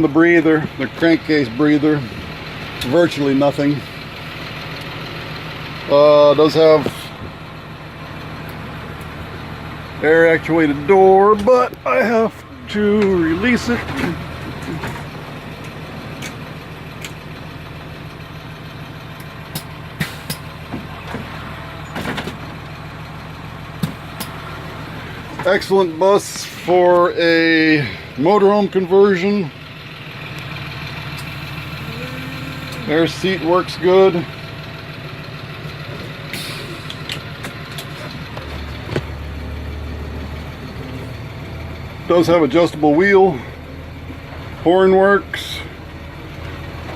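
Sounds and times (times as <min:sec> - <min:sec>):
diesel bus engine idling: 0:00.0 - 0:46.9
deep low drone: 0:29.2 - 0:34.9.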